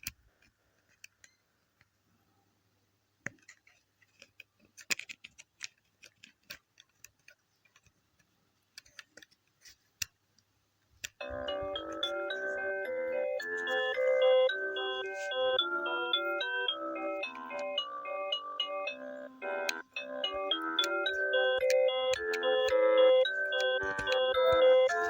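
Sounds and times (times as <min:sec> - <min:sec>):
melodic music: 0:11.2 - 0:25.0.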